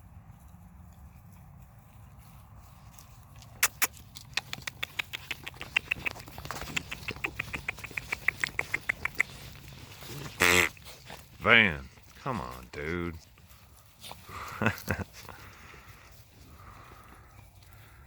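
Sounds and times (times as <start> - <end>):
puppies squeaking: 3.6 - 11.1.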